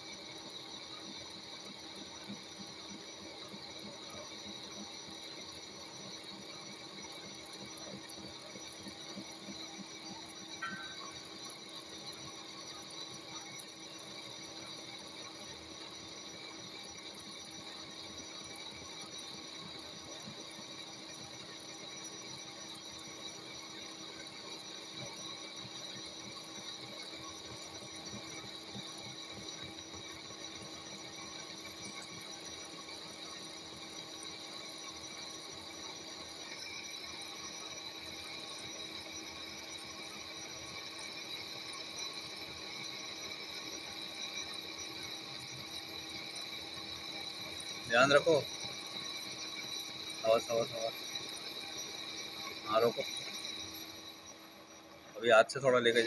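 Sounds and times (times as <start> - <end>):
lathe whining: 39.4 - 56.0.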